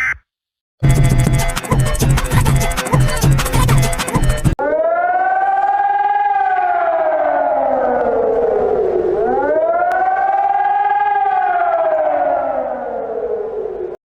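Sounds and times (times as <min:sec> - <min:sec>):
warning siren wailing: 0:04.6 - 0:14.0.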